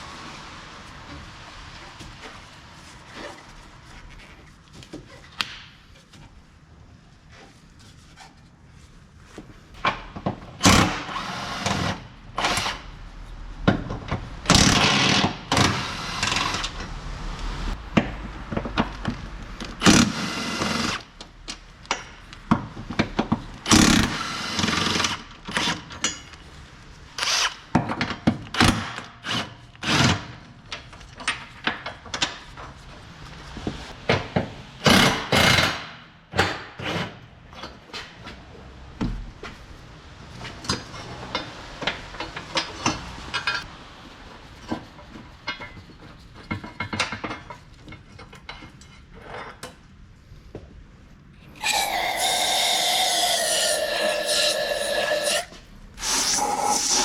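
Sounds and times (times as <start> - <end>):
noisy tool bursts: 19.8 - 21.0, 51.6 - 57.0.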